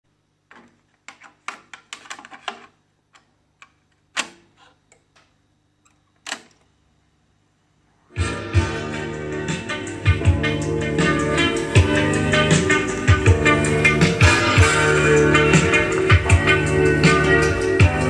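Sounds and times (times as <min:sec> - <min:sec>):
music from cassette deck: 0:08.2 - 0:18.0.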